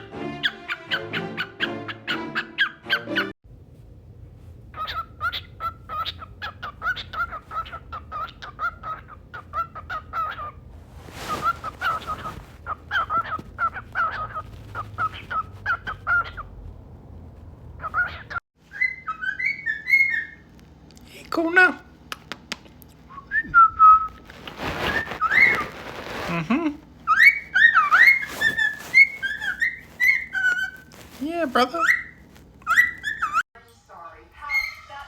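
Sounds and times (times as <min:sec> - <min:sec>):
bird calling in rapid notes: 0:00.4 - 0:03.3, 0:11.2 - 0:16.6, 0:17.8 - 0:20.5, 0:27.1 - 0:33.4.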